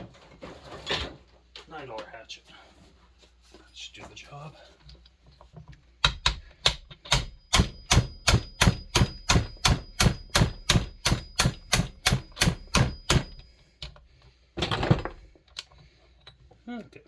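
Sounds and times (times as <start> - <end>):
hatchet striking metal: 6.0 - 13.5.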